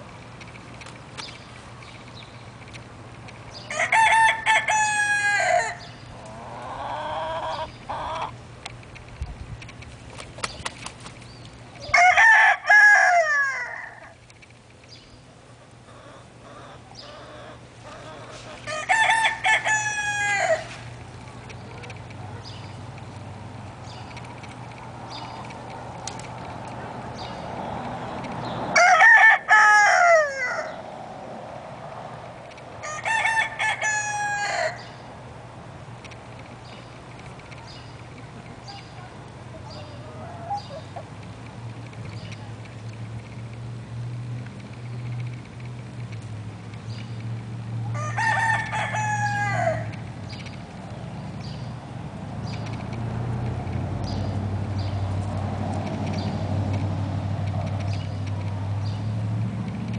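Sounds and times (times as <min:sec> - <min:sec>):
rooster crowing: 0:03.7 - 0:08.2, 0:11.8 - 0:14.2, 0:18.7 - 0:20.7, 0:28.7 - 0:30.8, 0:32.8 - 0:35.0, 0:47.9 - 0:50.0.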